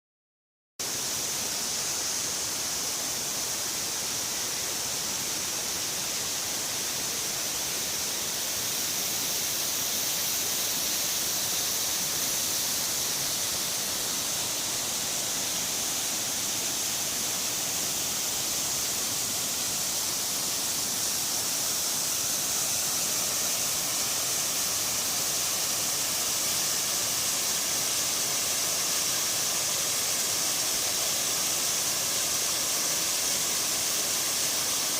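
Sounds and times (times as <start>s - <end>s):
waterfall and stream rushing: 0.8s - 34.9s.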